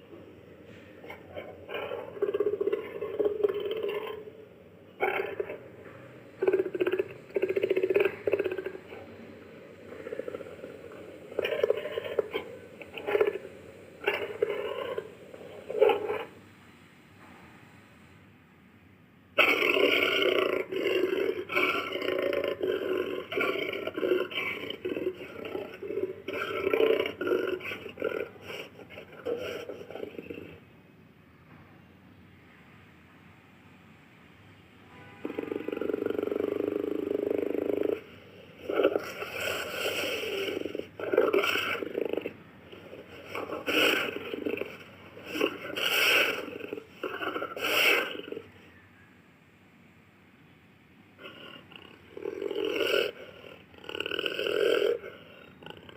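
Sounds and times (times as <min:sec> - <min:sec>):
jaguar roaring: 0:00.0 - 0:16.4, 0:19.4 - 0:30.7, 0:35.2 - 0:48.7, 0:51.2 - 0:55.9.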